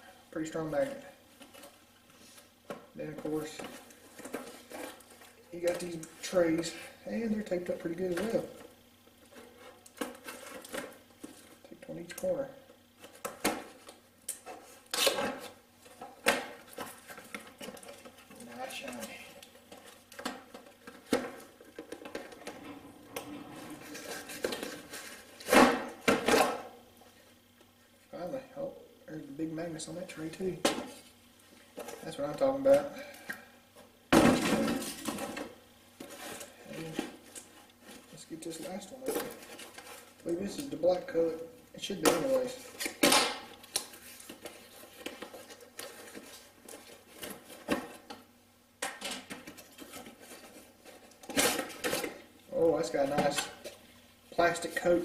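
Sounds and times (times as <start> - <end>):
clicks and rustling of handling: 7.5 - 27.8, 41.9 - 53.8
packaging rustling: 15.0 - 25.8.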